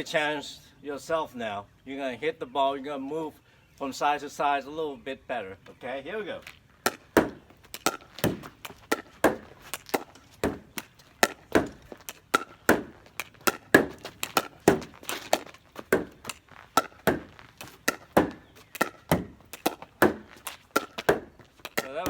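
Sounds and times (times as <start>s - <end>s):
ball rebounding off garage door: 6.8s - 22.0s
paddle striking plastic ball: 6.8s - 22.0s.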